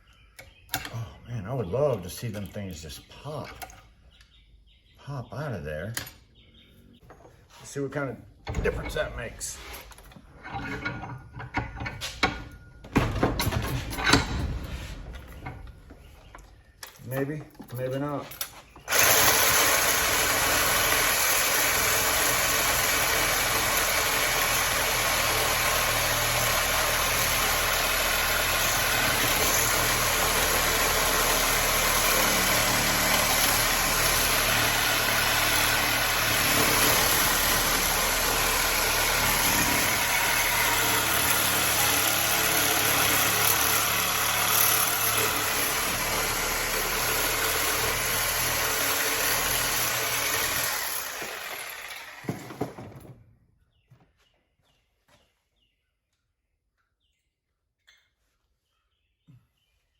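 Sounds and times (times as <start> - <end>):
power saw cutting metal: 18.8 - 52.8.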